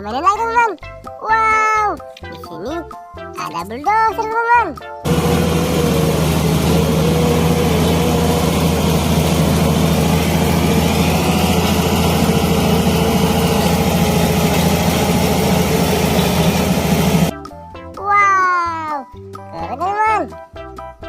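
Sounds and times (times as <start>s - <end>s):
heavy engine idling: 5.1s - 17.3s.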